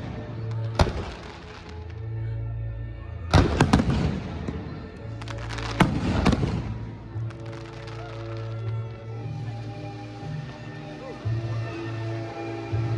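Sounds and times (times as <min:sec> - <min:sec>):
firework crackling: 0:00.0 - 0:02.0, 0:03.4 - 0:10.7.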